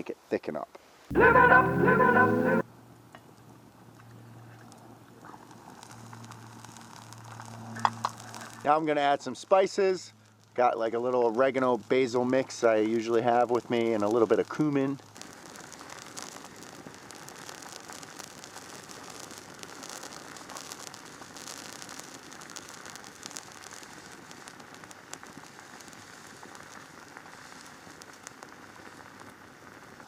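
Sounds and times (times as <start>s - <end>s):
campfire crackling and popping: 4.6s - 8.8s, 10.2s - 30.0s.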